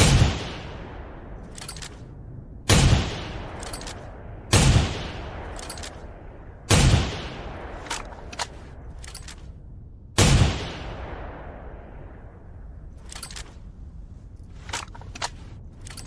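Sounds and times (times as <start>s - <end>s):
rifle shots echoing: 0.0s - 2.0s, 2.7s - 8.8s, 10.2s - 12.0s.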